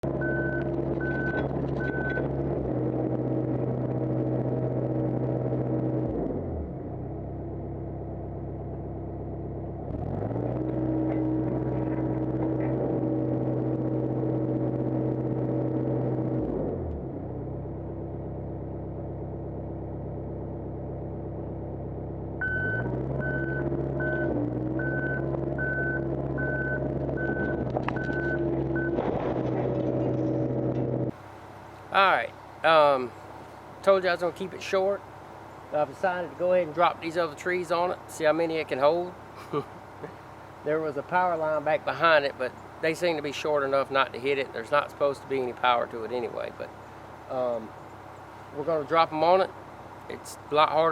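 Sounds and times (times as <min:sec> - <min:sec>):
excavator diesel engine running: 0:00.0 - 0:50.9
travel alarm beeping: 0:00.1 - 0:02.3, 0:22.4 - 0:29.0.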